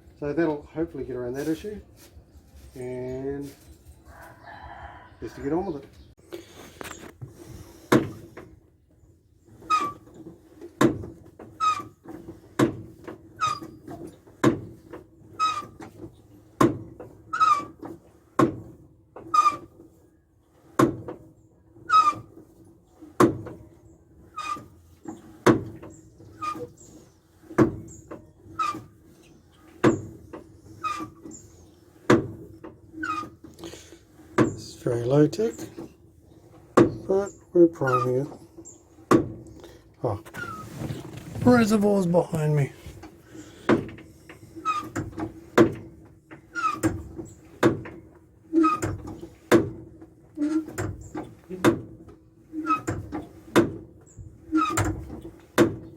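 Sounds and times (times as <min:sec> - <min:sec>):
clutch pedal squeak and clunk: 0:09.4 - 0:41.8, 0:43.0 - 0:55.9
short squeak: 0:09.6 - 0:10.2, 0:11.6 - 0:12.0, 0:15.4 - 0:15.8, 0:26.3 - 0:30.1, 0:32.9 - 0:33.7, 0:37.2 - 0:38.8, 0:40.3 - 0:41.6.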